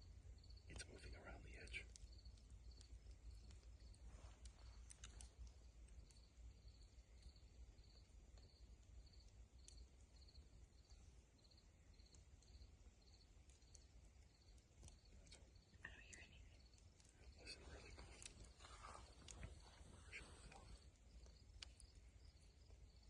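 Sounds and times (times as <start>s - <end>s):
insects chirping: 0.4s - 23.0s
faint clicks: 0.7s - 11.2s, 12.0s - 22.9s
low background rumble: 13.6s - 23.0s.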